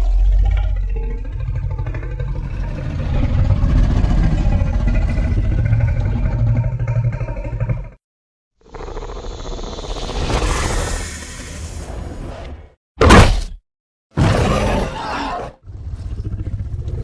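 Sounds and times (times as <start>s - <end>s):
monster rattling growl: 1.0s - 8.0s.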